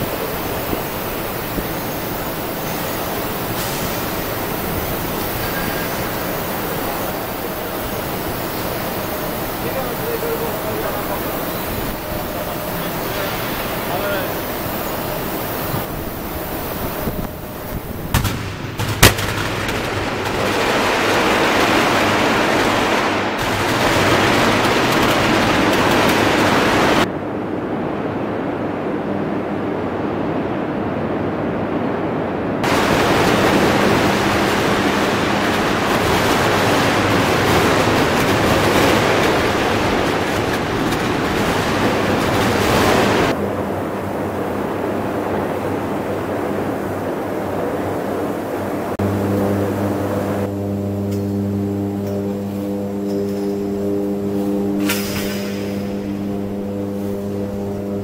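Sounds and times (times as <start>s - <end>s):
arc furnace crackling: 0.0s - 27.1s, 32.6s - 58.0s
sharp cracks: 18.1s - 26.6s.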